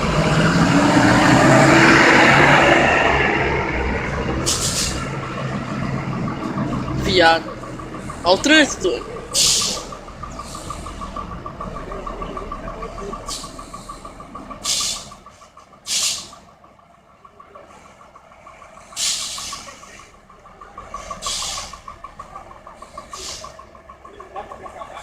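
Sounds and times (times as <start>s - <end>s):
rapidly pulsing high tone: 0.0s - 15.2s
diesel engine rumble: 0.0s - 25.0s
air brakes hissing: 4.4s - 5.3s, 6.9s - 16.5s, 18.7s - 20.2s, 20.8s - 23.8s.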